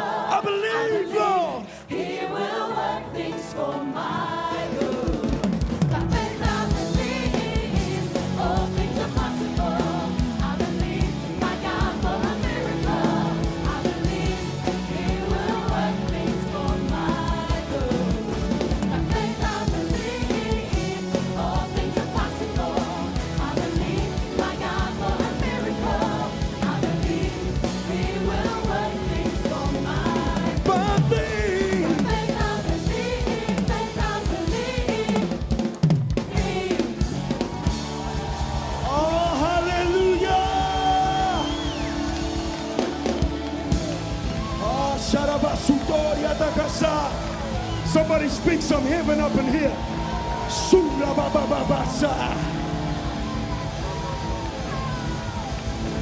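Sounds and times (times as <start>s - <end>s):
gospel band music: 0.0s - 56.0s
bass: 3.1s - 56.0s
steady drum beat: 4.2s - 56.0s
person singing wordless vocal runs: 4.4s - 35.7s.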